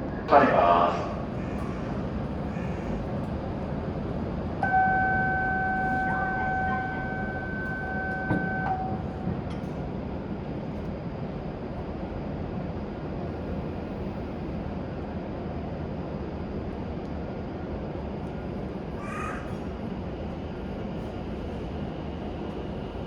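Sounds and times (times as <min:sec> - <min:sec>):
train platform rumble and hum: 0:00.0 - 0:23.0
horn-like signal tone: 0:04.6 - 0:09.0.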